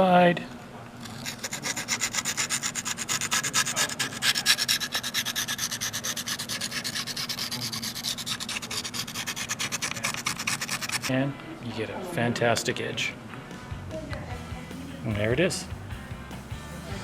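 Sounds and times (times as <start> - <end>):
honing stone rubbing on blade: 1.0 - 11.3.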